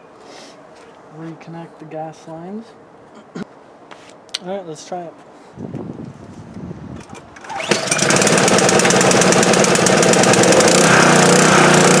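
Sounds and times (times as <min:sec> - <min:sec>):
pressure washer engine running: 0:07.4 - 0:12.0.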